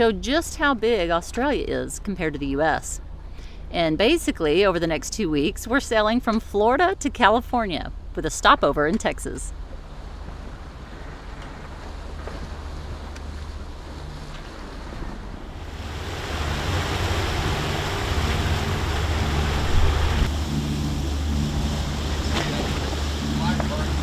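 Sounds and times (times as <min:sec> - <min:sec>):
low engine drone: 0:09.5 - 0:24.0
water rushing past boat: 0:09.6 - 0:24.0
wind buffeting microphone: 0:09.6 - 0:24.0.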